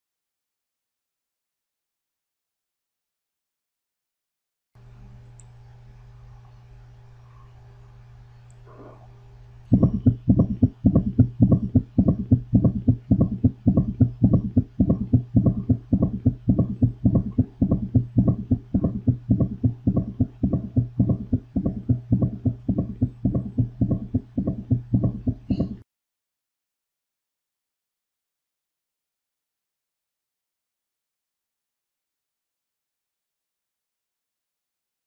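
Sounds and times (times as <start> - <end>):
heartbeat thumps through stethoscope: 9.7 - 25.8.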